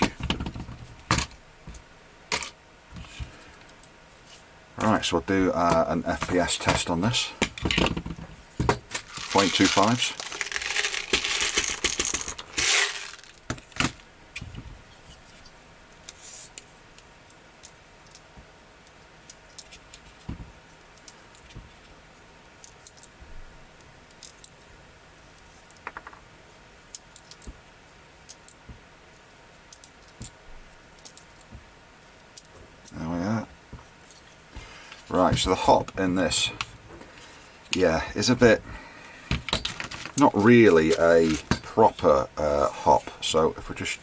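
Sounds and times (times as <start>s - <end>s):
sharp cracks: 8.9s - 14.0s.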